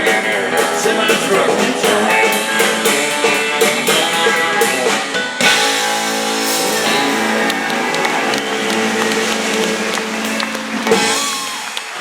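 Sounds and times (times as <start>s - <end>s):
country-rock band playing: 0.0s - 11.8s.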